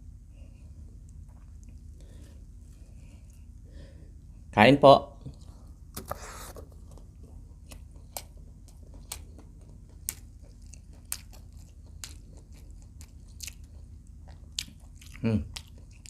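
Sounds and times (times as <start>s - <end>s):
crunchy chewing: 5.2s - 16.0s.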